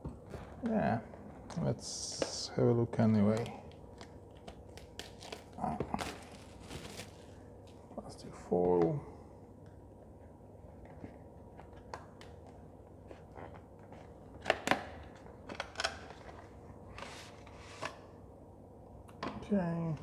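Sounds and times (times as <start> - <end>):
plastic foil packaging crinkling: 2.1 - 7.8.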